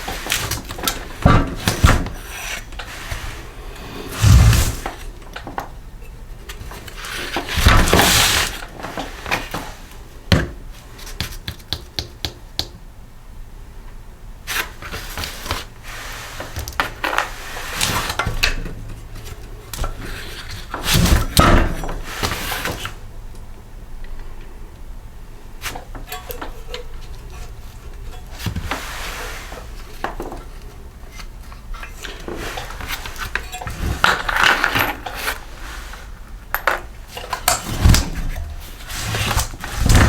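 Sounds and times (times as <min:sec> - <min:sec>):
heavy thumps: 0:03.8 - 0:05.0.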